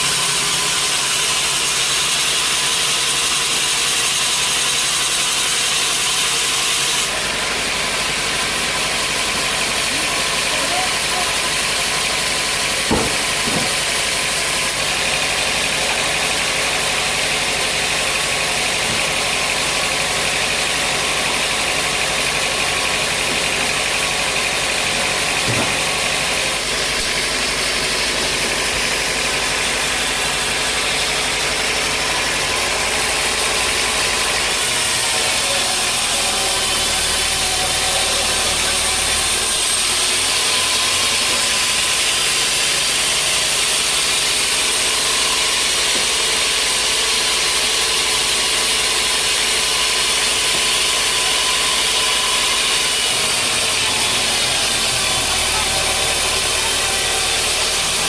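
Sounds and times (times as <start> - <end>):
sawmill machinery running: 0.0 - 58.0
sharp knocks: 12.8 - 13.9, 25.4 - 25.9.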